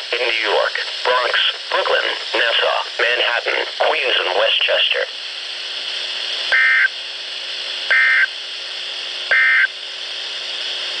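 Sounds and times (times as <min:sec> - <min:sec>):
radio hiss: 0:00.0 - 0:11.0
high-pitched buzzy data bursts: 0:06.5 - 0:06.9, 0:07.9 - 0:08.3, 0:09.3 - 0:09.7.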